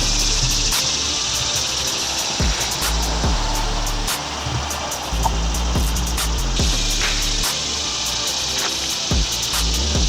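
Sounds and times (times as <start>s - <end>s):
held bass line: 0.0s - 7.8s
steady high hiss: 0.0s - 10.0s
deep bass drum hits: 2.4s - 4.1s.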